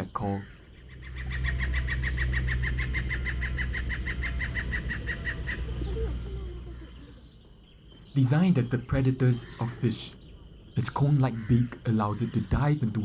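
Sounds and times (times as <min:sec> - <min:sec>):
steady low rumble: 0:00.4 - 0:08.9.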